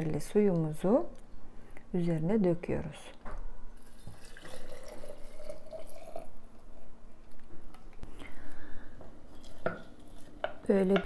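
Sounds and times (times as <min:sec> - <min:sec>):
water poured into glass jar: 0:03.8 - 0:06.4.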